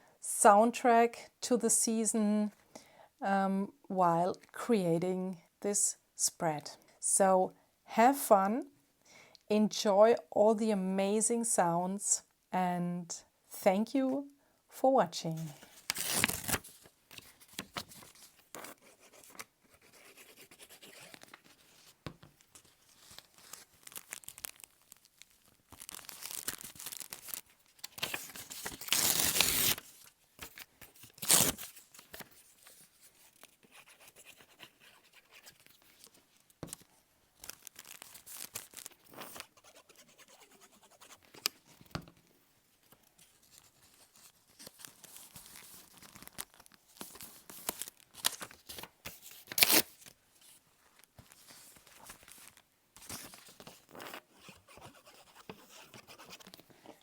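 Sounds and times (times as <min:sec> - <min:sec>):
paper rustling: 0:15.4 - 0:39.8, 0:42.9 - 0:57.0
paper tearing: 0:15.8 - 0:16.8, 0:25.7 - 0:32.2, 0:48.3 - 0:50.0.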